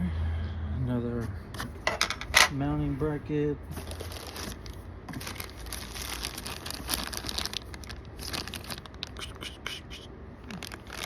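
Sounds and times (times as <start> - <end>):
packaging crinkling and tearing: 3.8 - 9.3, 10.4 - 11.0.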